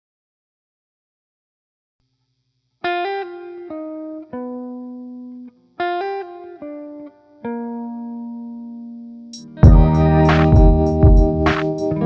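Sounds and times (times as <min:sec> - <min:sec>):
plucked guitar phrase: 0:06.1 - 0:12.0.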